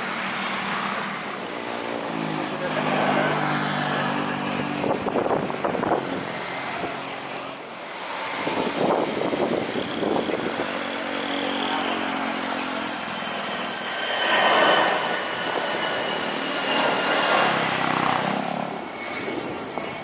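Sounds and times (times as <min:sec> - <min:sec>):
vehicle engines passing: 0:00.0 - 0:20.0.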